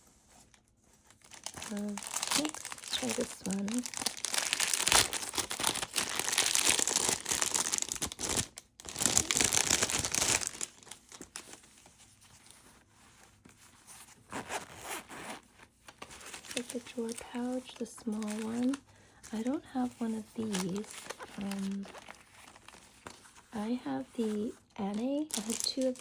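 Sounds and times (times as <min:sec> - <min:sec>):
packaging crinkling and rustling: 0:00.0 - 0:26.0.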